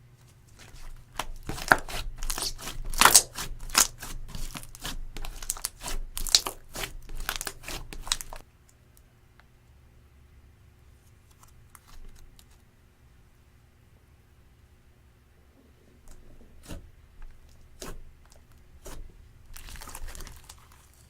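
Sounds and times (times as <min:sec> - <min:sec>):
slime squished by hand: 0:00.6 - 0:08.4, 0:16.1 - 0:21.0.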